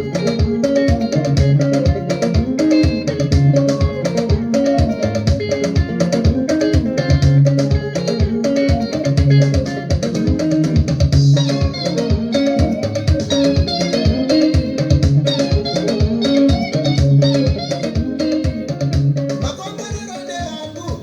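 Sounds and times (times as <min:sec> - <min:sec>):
bass guitar: 0:00.0 - 0:21.0
fast drum beat: 0:00.0 - 0:21.0
plucked guitar lines: 0:00.0 - 0:21.0.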